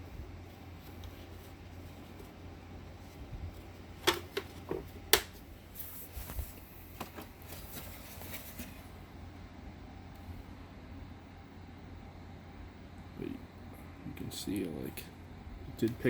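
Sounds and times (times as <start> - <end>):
soft rustling: 5.7 - 9.0.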